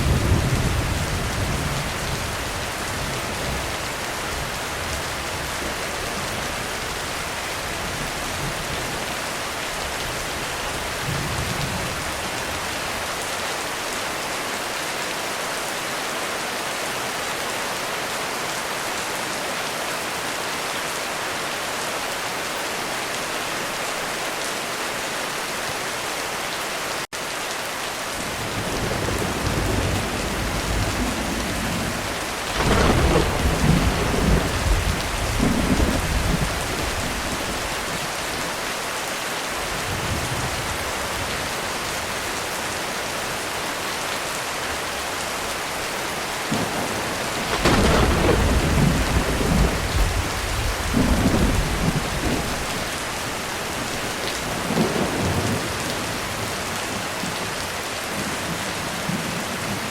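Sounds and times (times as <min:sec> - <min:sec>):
heavy rain on a roof: 0:00.0 - 0:59.9
thunder rumbling: 0:28.4 - 0:38.2, 0:46.5 - 0:56.5.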